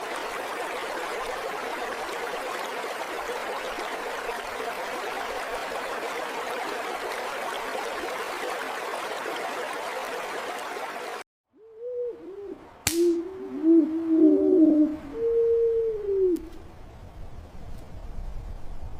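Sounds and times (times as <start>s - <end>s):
river water rushing: 0.0s - 11.2s
rising and falling hoots: 11.6s - 16.5s
sharp click: 12.9s - 13.2s.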